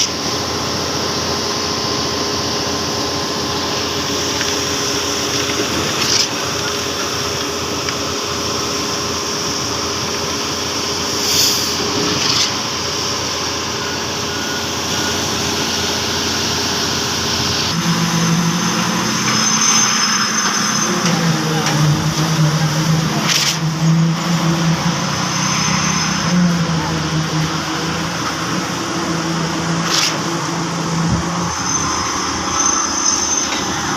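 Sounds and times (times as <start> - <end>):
concrete pump diesel engine running: 0.0 - 33.9
brief hisses: 11.2 - 12.4.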